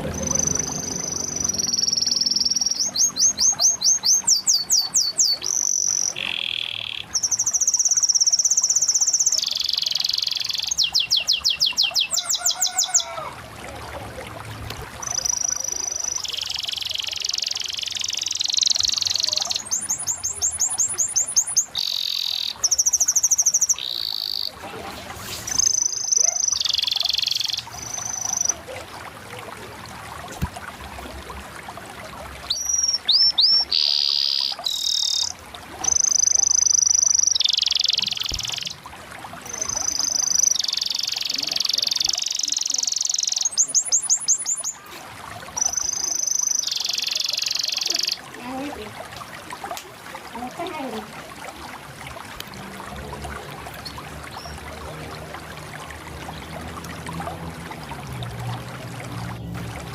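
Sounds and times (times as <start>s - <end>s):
canary singing: 0.0s - 13.3s, 15.0s - 24.6s, 25.5s - 28.6s, 32.5s - 38.8s, 39.4s - 44.8s, 45.6s - 48.9s.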